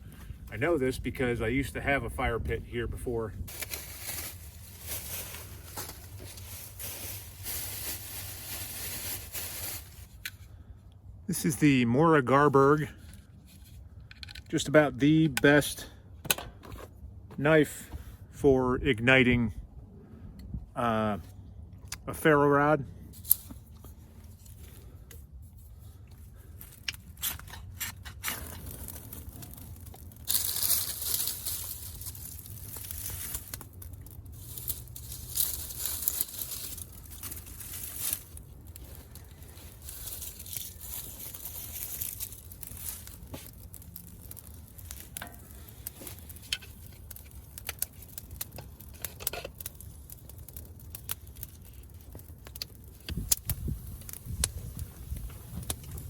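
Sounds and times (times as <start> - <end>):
dry tinder clicking and rustling: 26.6 - 56.0.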